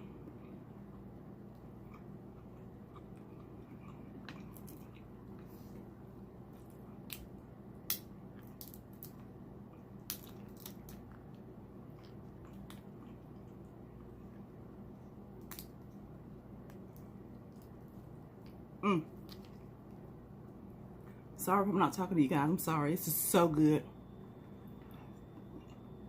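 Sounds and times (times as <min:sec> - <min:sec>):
steady low hum: 0:00.0 - 0:26.0
crab shell cracking: 0:07.0 - 0:09.3, 0:10.0 - 0:11.4, 0:15.4 - 0:15.8.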